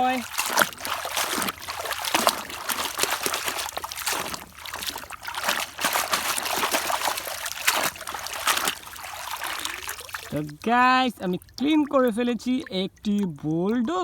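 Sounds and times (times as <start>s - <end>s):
water running and splashing: 0.0s - 14.0s.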